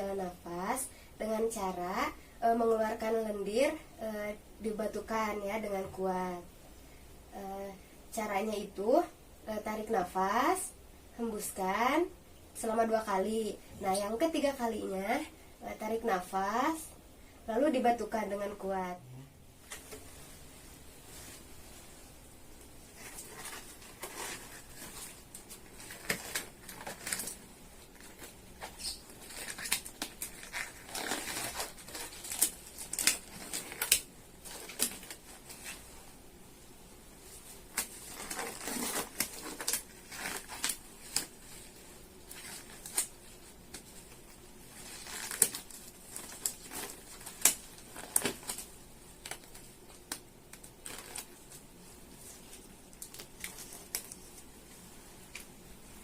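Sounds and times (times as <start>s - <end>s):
rustling and crinkling: 19.6s - 56.0s.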